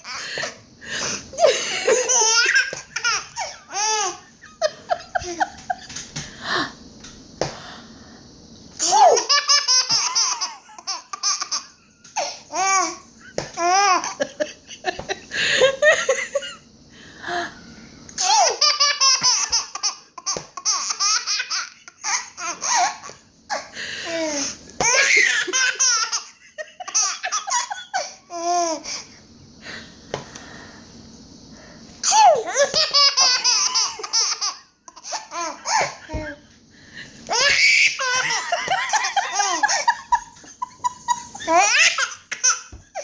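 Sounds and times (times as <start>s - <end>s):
baby laughing hysterically: 1.4s - 5.9s, 8.8s - 13.0s, 18.2s - 23.6s, 24.4s - 28.8s, 32.0s - 36.2s, 37.3s - 43.0s.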